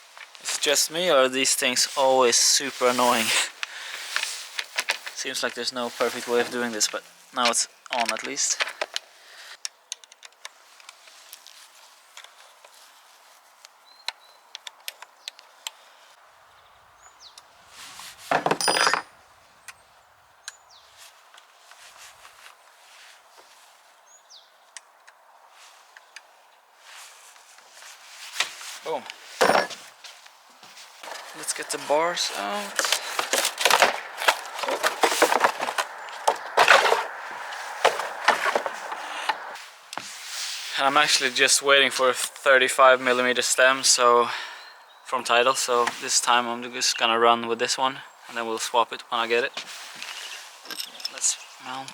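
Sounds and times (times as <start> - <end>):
packaging crackling and rustling: 30.2 - 39.6
handling noise burst: 31.0 - 39.6.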